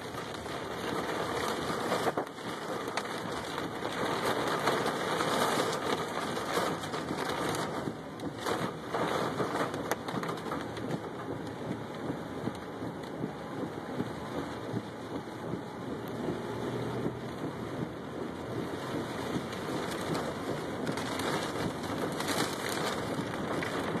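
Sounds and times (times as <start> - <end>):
hail clattering on truck: 0.0 - 11.4, 18.9 - 24.0.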